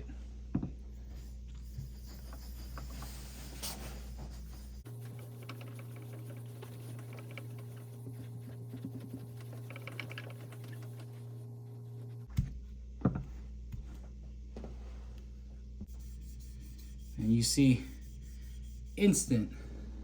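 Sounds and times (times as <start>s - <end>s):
low steady hum: 0.0s - 20.0s
blade rubbing on a whetstone: 1.1s - 7.9s.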